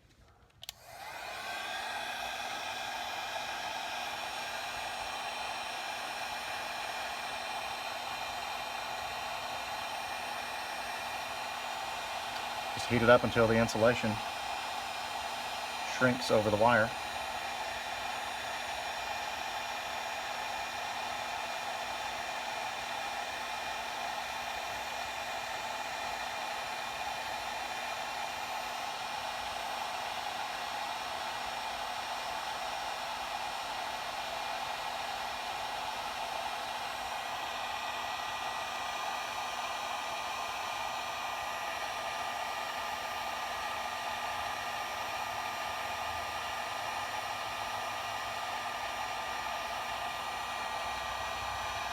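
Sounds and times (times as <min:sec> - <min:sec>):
heat gun blowing: 0:00.0 - 0:51.9.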